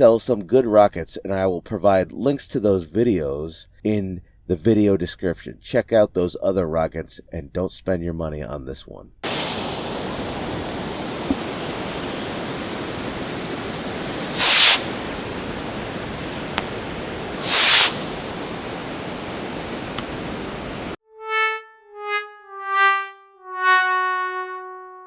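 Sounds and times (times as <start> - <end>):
faint firework pops: 9.2 - 11.9, 14.1 - 18.6
firework rockets whooshing: 9.2 - 21.0
steady hiss: 9.2 - 21.0.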